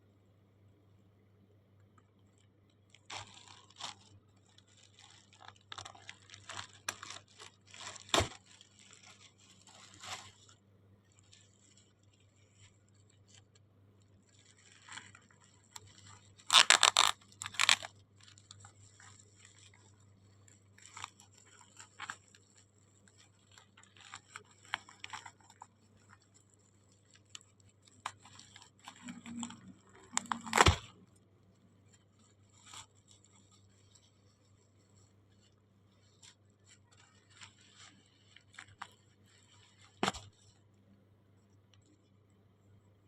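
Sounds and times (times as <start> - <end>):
packaging crinkling: 3.1 - 10.6, 14.3 - 20.0, 20.7 - 31.0, 31.9 - 40.5.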